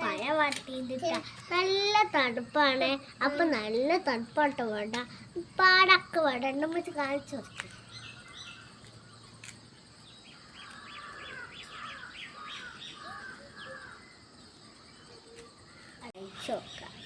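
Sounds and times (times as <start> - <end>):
birds calling: 7.0 - 17.0.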